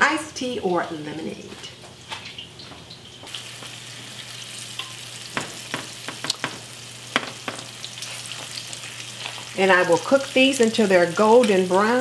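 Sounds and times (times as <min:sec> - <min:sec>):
meat sizzling in a frying pan: 0:03.2 - 0:12.0.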